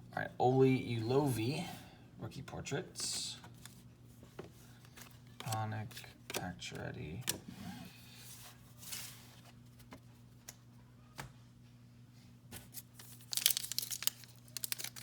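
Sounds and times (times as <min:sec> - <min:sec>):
cards clicking: 0:04.9 - 0:07.4
foil wrapper crinkling and tearing: 0:12.8 - 0:15.0.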